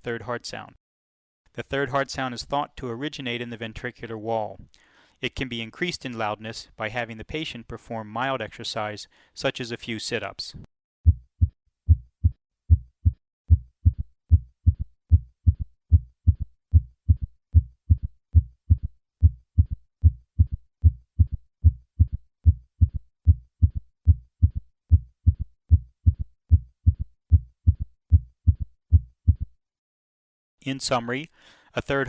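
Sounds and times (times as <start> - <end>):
heart sounds through a stethoscope: 11.0 - 29.6.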